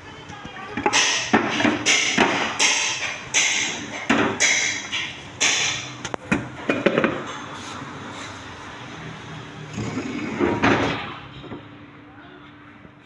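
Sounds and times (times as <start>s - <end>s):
sharp metallic clicks and knocks: 0.3s - 7.5s.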